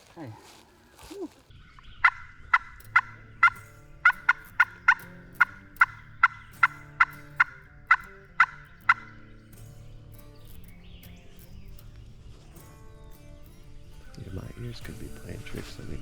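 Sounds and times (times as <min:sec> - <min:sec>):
turkey calls: 0:00.0 - 0:12.6
faint background music: 0:02.6 - 0:16.0.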